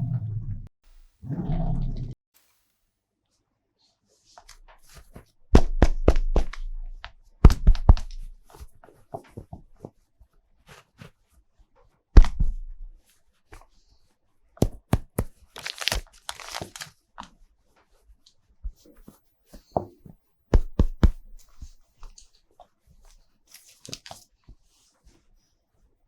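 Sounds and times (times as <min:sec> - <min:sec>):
packaging tearing and crinkling: 0:14.6 - 0:16.9.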